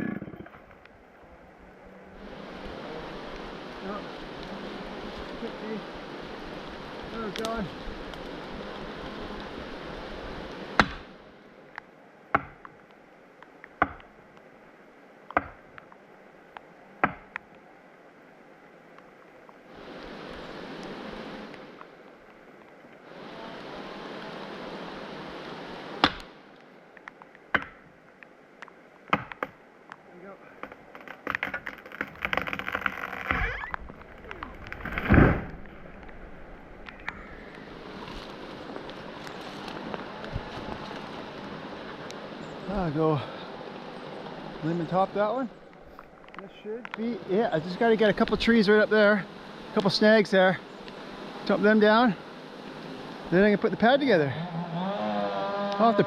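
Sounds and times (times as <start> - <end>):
steady rain: 0.0 - 56.0
branches cracking and snapping: 7.2 - 9.5, 27.0 - 42.2
tree trunk hitting ground: 30.6 - 36.4.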